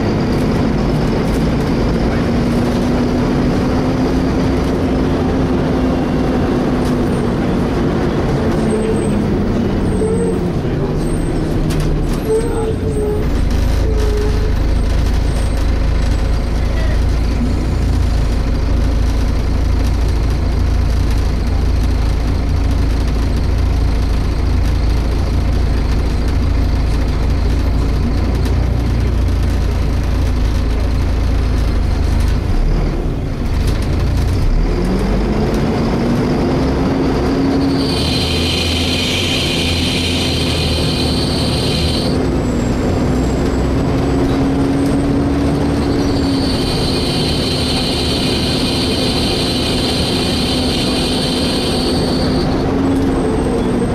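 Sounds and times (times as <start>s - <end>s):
bus engine rumbling: 0.0s - 53.9s
loud high-pitched screeching: 37.4s - 42.2s, 45.6s - 53.9s.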